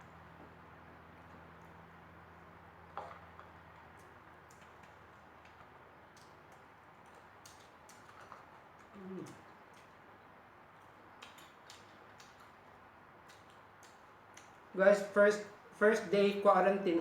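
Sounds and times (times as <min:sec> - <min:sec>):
steady low hum: 0:00.0 - 0:17.0
mouth clicks and smacks chewing: 0:03.5 - 0:14.7
person humming low: 0:08.9 - 0:09.5.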